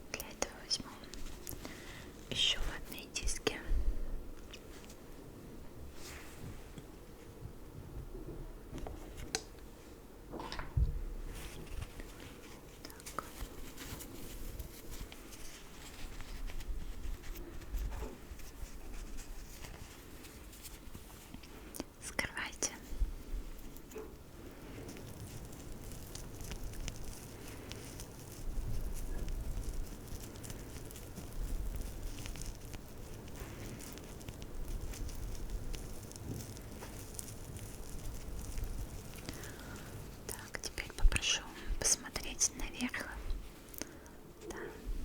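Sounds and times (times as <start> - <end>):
soft rubbing: 0.0 - 10.0, 11.0 - 45.0
small crackles and clicks: 0.1 - 3.6, 4.4 - 5.3, 8.7 - 9.7, 10.4 - 44.7
cotton pads rubbing: 22.8 - 41.0.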